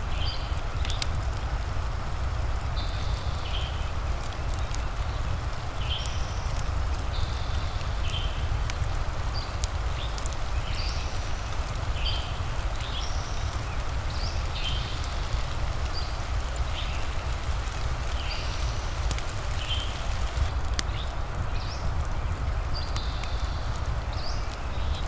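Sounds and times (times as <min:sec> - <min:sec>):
rain hiss: 0:00.0 - 0:25.0
sharp clicks: 0:13.4 - 0:22.1.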